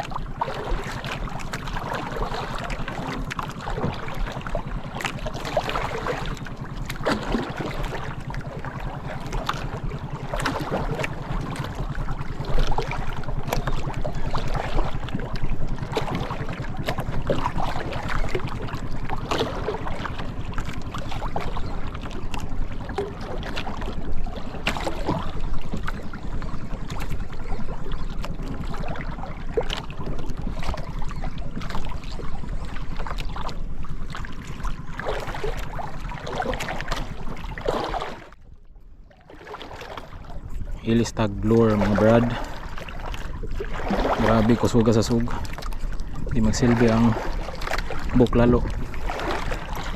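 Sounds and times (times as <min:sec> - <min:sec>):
boat engine humming: 0:00.0 - 0:49.9
water splashing against hull: 0:00.0 - 0:49.9
wind on microphone: 0:40.2 - 0:49.9.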